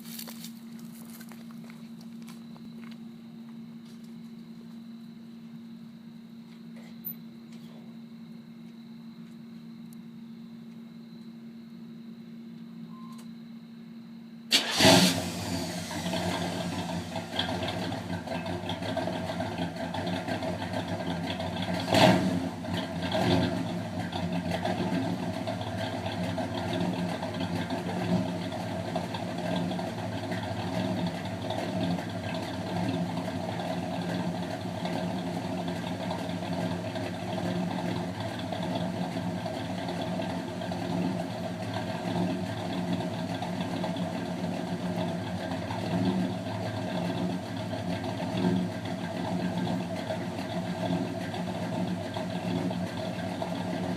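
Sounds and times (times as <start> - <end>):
car engine idling: 14.5 - 53.9.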